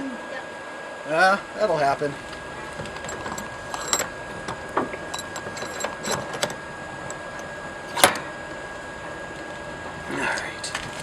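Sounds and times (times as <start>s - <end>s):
mechanical hum: 0.0s - 11.0s
thin steady whine: 0.0s - 11.0s
light metallic clinks: 2.2s - 8.3s.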